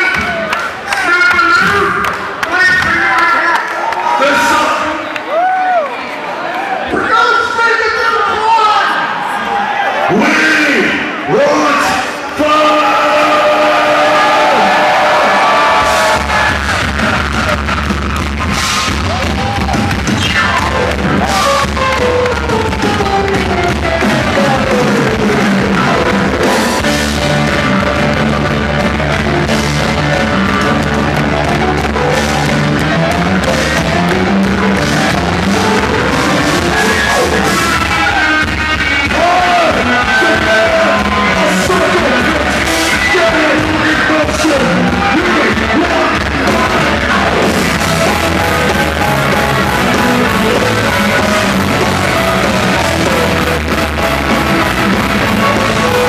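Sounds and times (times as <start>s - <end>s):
shouted lead vocal: 7.0s - 17.8s, 34.0s - 56.0s
distorted guitars: 10.2s - 56.0s
drums: 10.2s - 56.0s.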